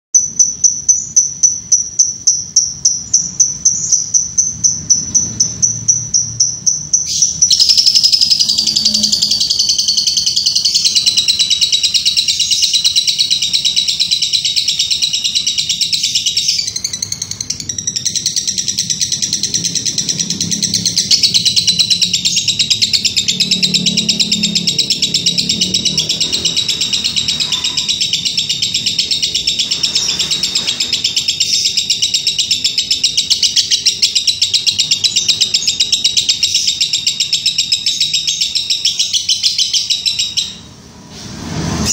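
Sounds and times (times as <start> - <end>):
songbird singing loudly: 0.2 - 40.7.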